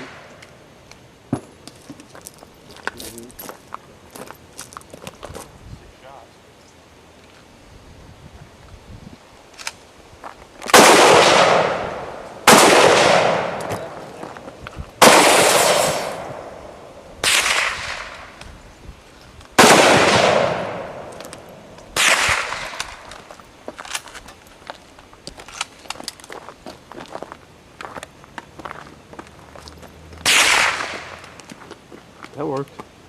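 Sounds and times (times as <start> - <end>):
gunshots: 10.7 - 14.1, 15.0 - 16.6, 17.2 - 18.3, 19.6 - 23.0, 30.2 - 31.2.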